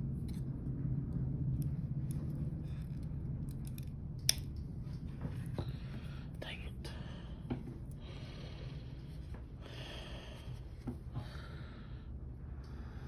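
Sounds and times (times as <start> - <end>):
steady low hum: 0.0 - 13.0
scissors snipping cord: 1.6 - 4.6.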